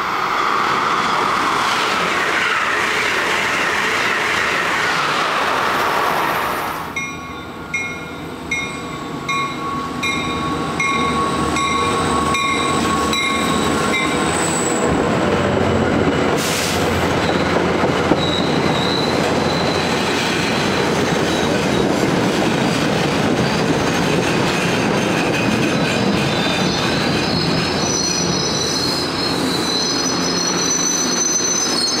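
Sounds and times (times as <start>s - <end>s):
train running noise: 0.0s - 32.0s
train wheels squealing on rails: 0.0s - 32.0s
bell ringing: 7.0s - 14.2s.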